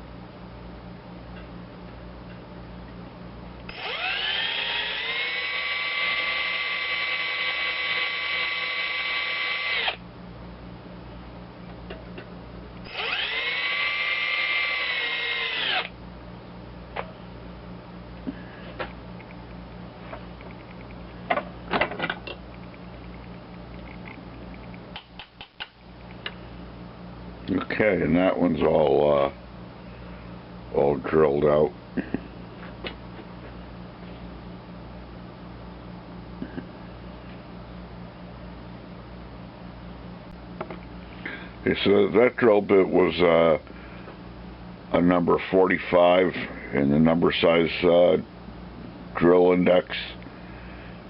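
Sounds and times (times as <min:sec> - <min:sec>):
low electrical hum: 0:00.0 - 0:51.0
small electric drill whining: 0:03.7 - 0:10.0, 0:12.8 - 0:16.0.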